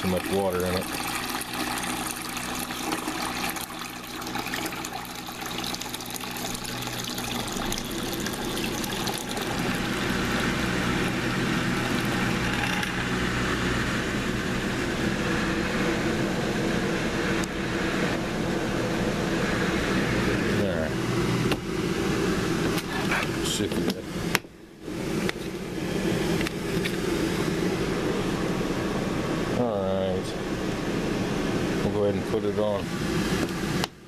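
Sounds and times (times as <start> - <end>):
water draining: 0.0 - 13.1
washing machine drain pump humming: 0.0 - 34.0.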